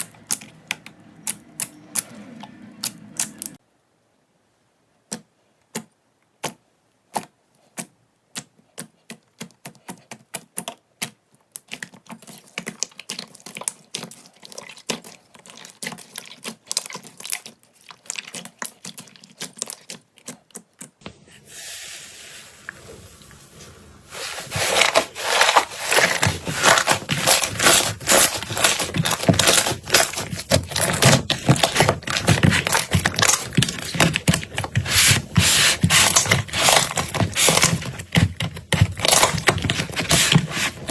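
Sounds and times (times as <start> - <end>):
slime popping and crackling: 2.8 - 3.6, 8.4 - 20.9, 25.8 - 40.9.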